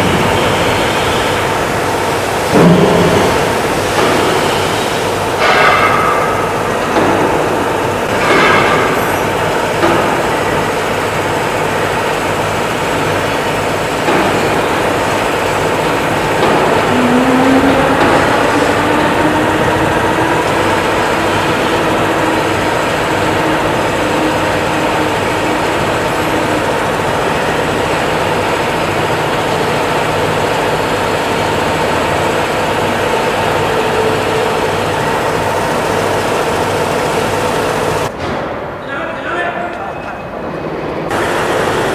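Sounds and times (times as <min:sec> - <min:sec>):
motor running with whine: 0:06.3 - 0:38.1.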